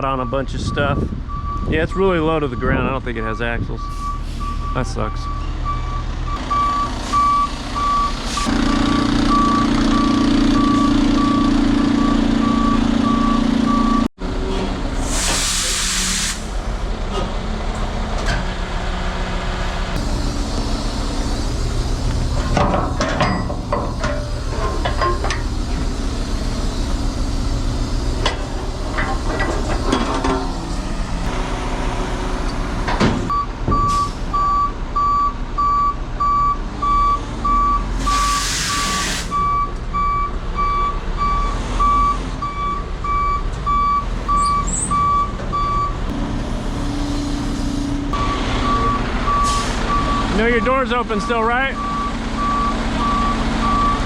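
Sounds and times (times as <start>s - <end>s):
reversing alarm beeping: 0.0s - 14.1s, 20.1s - 25.7s, 33.3s - 46.0s, 48.1s - 54.0s
diesel engine running: 0.0s - 54.0s
air hiss: 15.0s - 16.6s, 38.1s - 39.3s
metal clanks and knocks: 22.0s - 26.0s, 28.2s - 30.9s.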